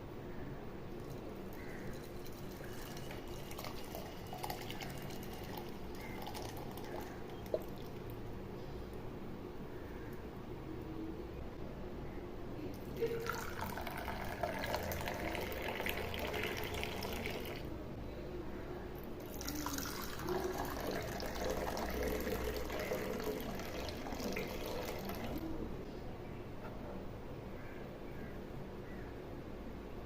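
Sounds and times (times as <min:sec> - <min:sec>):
liquid pouring: 0:01.0 - 0:08.3, 0:12.8 - 0:17.7, 0:19.2 - 0:25.5.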